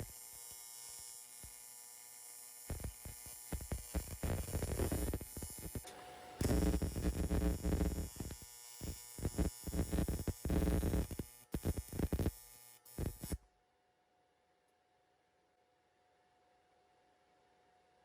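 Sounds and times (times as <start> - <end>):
welding arc buzzing: 0.0 - 13.4.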